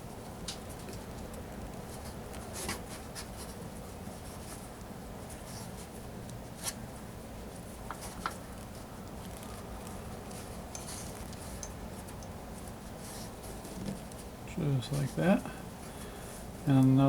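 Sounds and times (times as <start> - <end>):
cord rubbing and sliding: 7.9 - 14.3.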